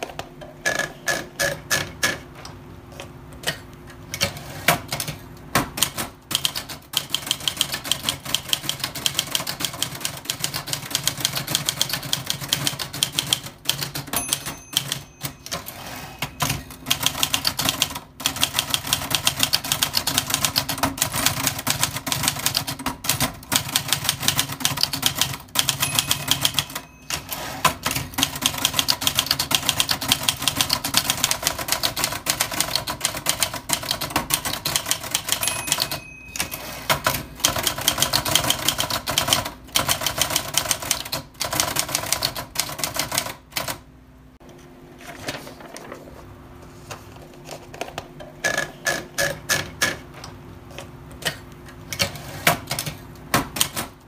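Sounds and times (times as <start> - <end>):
typewriter keystrokes clattering: 3.4 - 43.8, 52.0 - 54.0.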